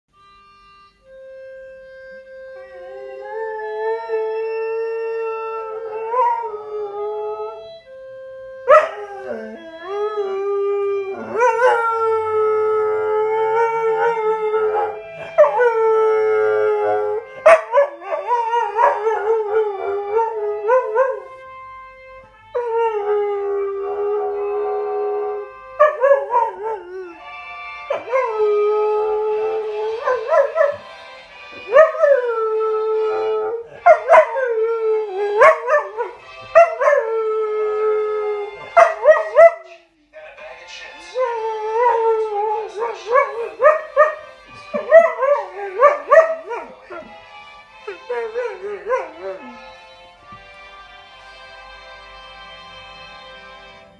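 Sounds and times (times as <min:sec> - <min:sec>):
held musical notes: 0:00.1 - 0:53.9
dog howling: 0:08.7 - 0:21.3, 0:22.6 - 0:27.2, 0:27.9 - 0:30.8, 0:31.6 - 0:39.6, 0:41.2 - 0:47.2, 0:47.9 - 0:49.7.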